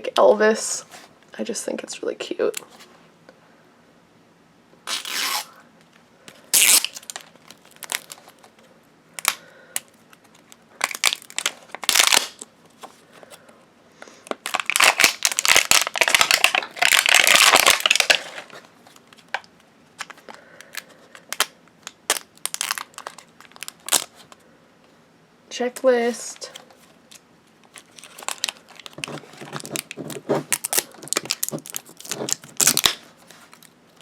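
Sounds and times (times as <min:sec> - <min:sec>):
plastic wrapping tearing and crinkling: 0:04.9 - 0:05.6, 0:06.3 - 0:08.5, 0:09.2 - 0:12.5, 0:14.3 - 0:24.4, 0:26.5 - 0:34.0.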